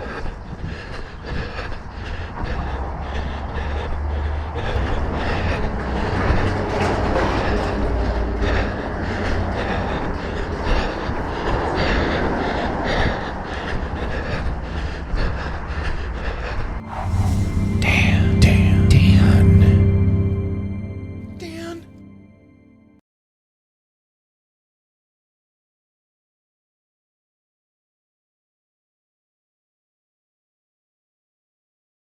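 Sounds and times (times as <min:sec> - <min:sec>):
runner breathing heavily: 0:00.0 - 0:18.1.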